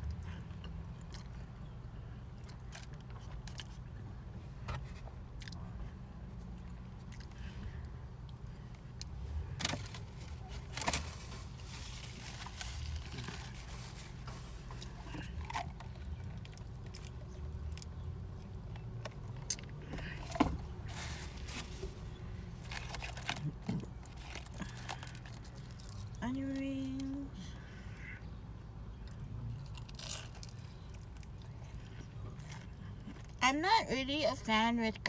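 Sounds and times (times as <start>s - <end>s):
low car cabin hum: 0.0s - 35.0s
person chewing: 6.4s - 9.2s, 29.0s - 33.3s
food packaging crinkling: 9.7s - 17.1s, 20.8s - 26.2s.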